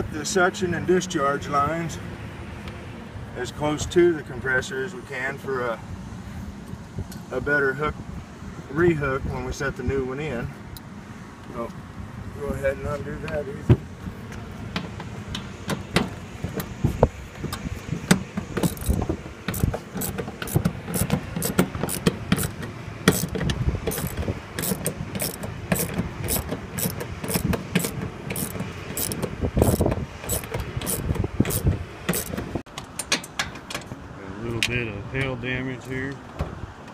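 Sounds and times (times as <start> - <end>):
hand tool metallic clicks: 18.6 - 33.4.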